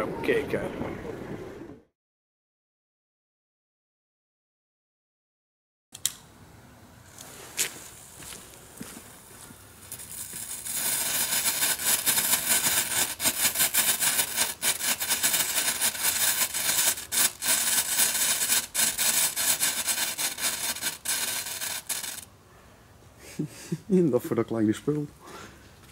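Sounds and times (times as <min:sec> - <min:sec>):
strobe pellets crackling fizz: 0:07.8 - 0:22.3.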